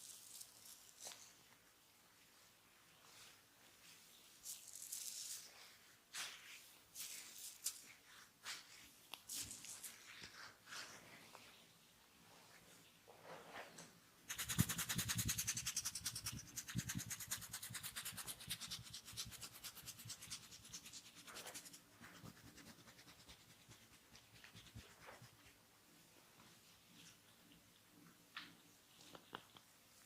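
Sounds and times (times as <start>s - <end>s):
hands rubbing during massage: 14.3s - 25.6s.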